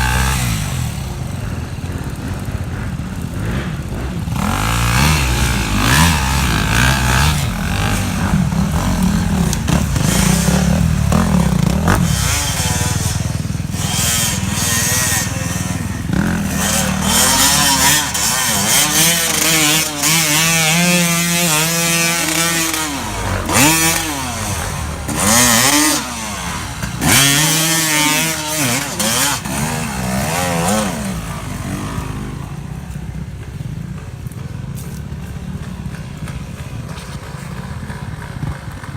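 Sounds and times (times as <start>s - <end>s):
off-road vehicle engine revving: 0.0s - 33.2s.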